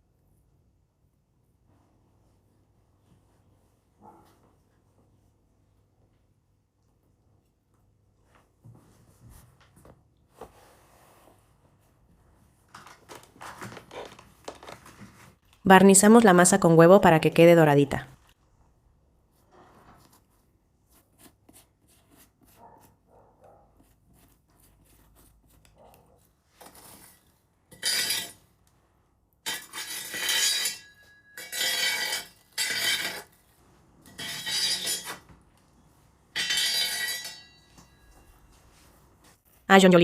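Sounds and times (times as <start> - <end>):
utensils and dishes clattering: 29.5 - 33.3, 36.3 - 38.2.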